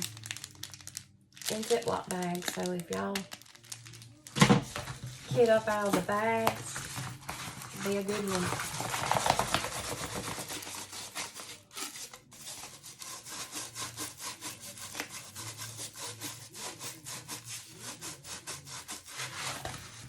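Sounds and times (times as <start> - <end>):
rubbing strokes by hand: 9.6 - 20.0.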